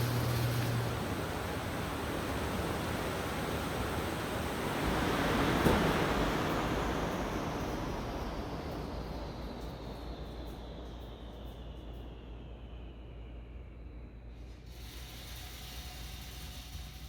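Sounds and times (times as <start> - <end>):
drum sander running: 0.0 - 6.5.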